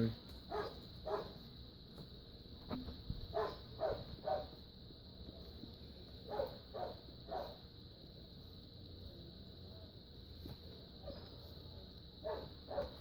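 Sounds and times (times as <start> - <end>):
faint dog barking: 0.5 - 1.4, 3.3 - 4.6, 6.2 - 7.6, 12.2 - 13.0.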